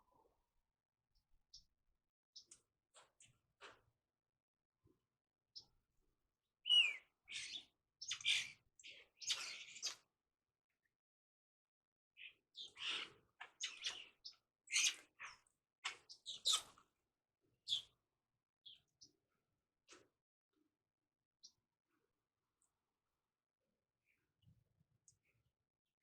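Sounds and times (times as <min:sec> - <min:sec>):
birds chirping and calling: 0:06.7 - 0:10.0, 0:12.6 - 0:16.8, 0:17.7 - 0:17.9.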